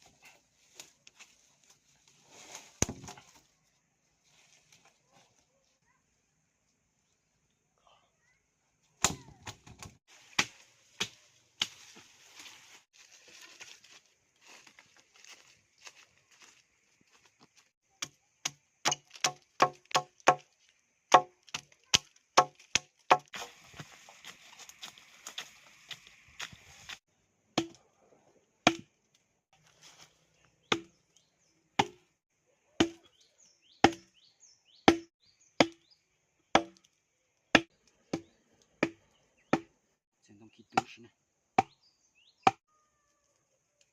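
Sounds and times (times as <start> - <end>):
blade chopping wood: 2.8 - 3.2, 9.0 - 11.8, 18.0 - 20.4, 21.1 - 23.4, 27.6 - 27.8, 28.6 - 28.9, 30.7 - 31.0, 31.8 - 32.0, 33.8 - 34.1, 34.9 - 35.8, 36.6 - 36.9, 37.6 - 39.7.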